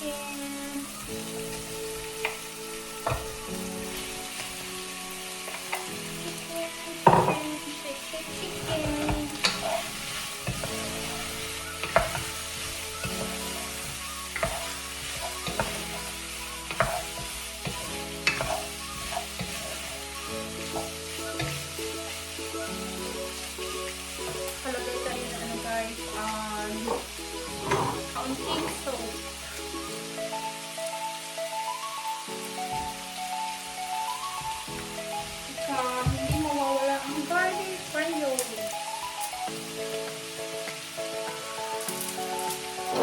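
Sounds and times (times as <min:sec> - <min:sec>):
chicken sizzling in hot oil: 0:00.0 - 0:43.0
utensil scraping and knocking pan: 0:08.6 - 0:16.0, 0:16.7 - 0:19.8, 0:26.8 - 0:28.8.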